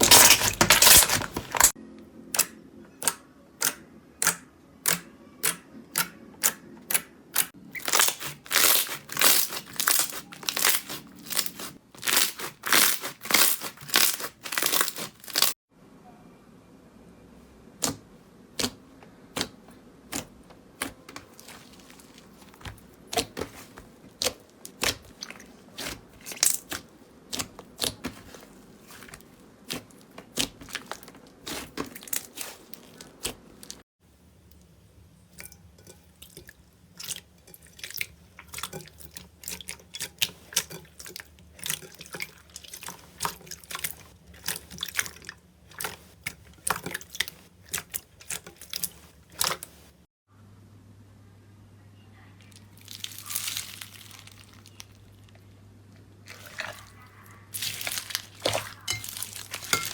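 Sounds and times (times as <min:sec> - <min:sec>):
slime popping and crackling: 0:00.0 - 0:01.8, 0:07.4 - 0:15.6, 0:20.1 - 0:33.8, 0:52.8 - 0:55.2, 0:57.5 - 0:59.9.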